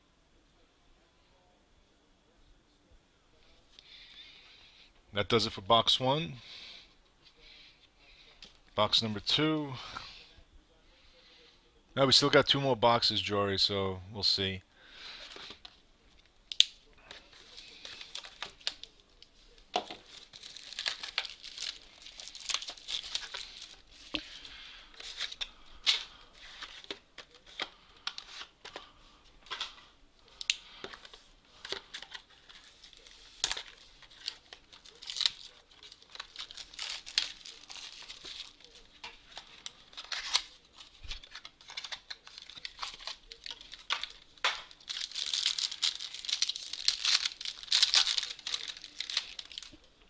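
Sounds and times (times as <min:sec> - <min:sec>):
plastic wrapping crinkling: 0:16.6 - 0:49.9
plastic wrap being torn: 0:20.0 - 0:24.2, 0:31.9 - 0:39.0, 0:39.6 - 0:49.8.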